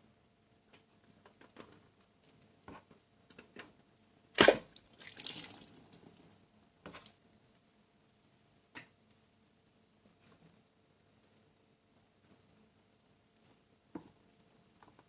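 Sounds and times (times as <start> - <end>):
water balloon bursting: 4.4 - 5.7
liquid splashing: 4.4 - 6.3.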